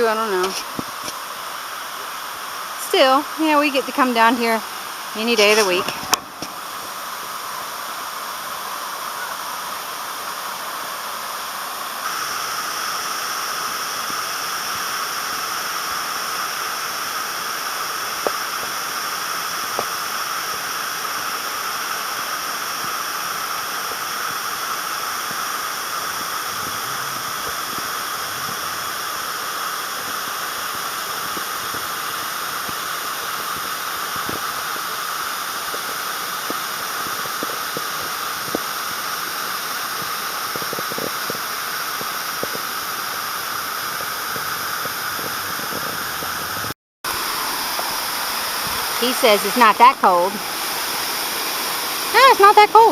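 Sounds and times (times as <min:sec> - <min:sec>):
waterfall rushing: 0:00.0 - 0:52.9.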